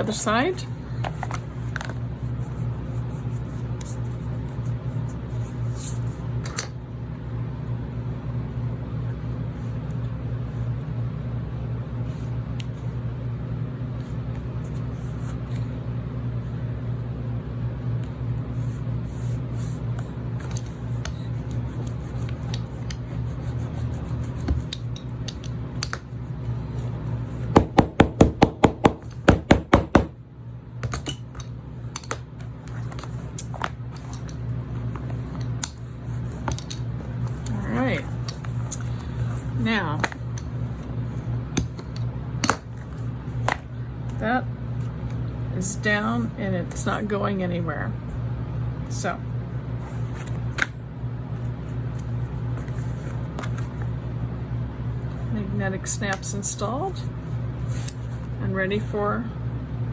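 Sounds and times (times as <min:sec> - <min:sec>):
hammer tapping on leather: 0:27.6 - 0:30.2.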